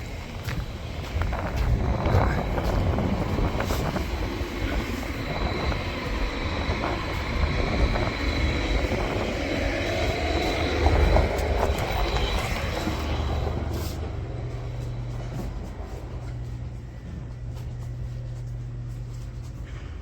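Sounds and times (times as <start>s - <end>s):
road noise: 0.0s - 16.2s
faint high whine: 0.0s - 16.6s
truck engine rumble: 0.0s - 20.0s.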